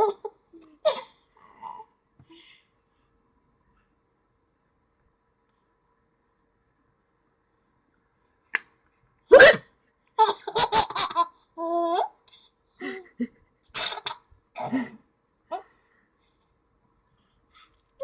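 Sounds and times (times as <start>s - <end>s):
person hiccuping: 9.3s - 9.7s.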